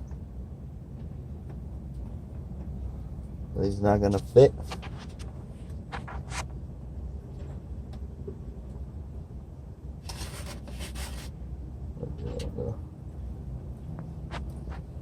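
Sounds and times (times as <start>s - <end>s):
steady low rumble: 0.0s - 15.0s
parts scraping and rustling: 4.6s - 6.5s, 10.0s - 11.4s.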